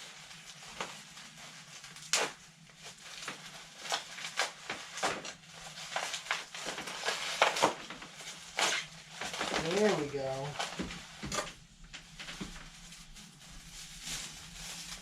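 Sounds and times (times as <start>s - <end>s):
packaging being torn open: 1.8s - 10.0s.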